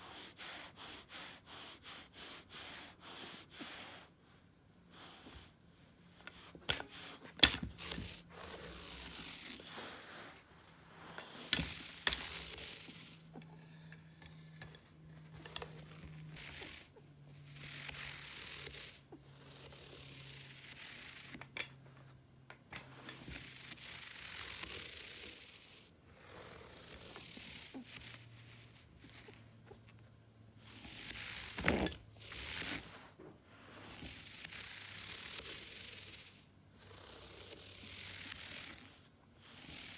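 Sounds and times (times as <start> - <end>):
rubbing and scraping: 6.3 - 22.1, 30.7 - 36.4.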